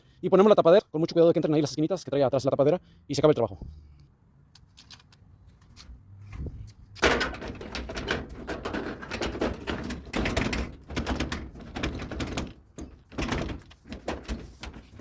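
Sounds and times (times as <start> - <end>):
sheet metal clanking and scraping: 7.0 - 15.0.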